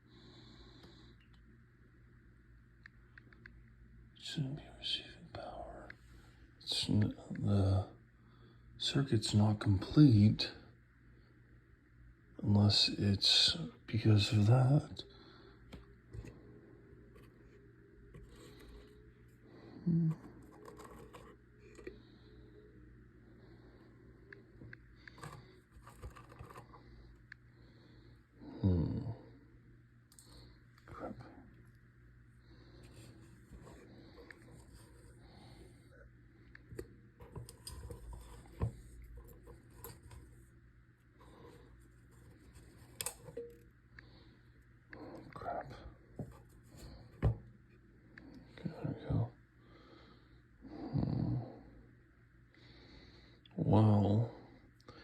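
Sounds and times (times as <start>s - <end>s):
faint steady hum: 0.0s - 55.0s
man humming: 19.8s - 20.3s, 28.6s - 29.2s
parts clicking and scraping by hand: 20.1s - 22.0s, 25.0s - 27.3s, 35.9s - 40.6s, 41.2s - 43.7s
clicks and scratches of parts: 20.2s - 22.0s, 25.0s - 27.3s.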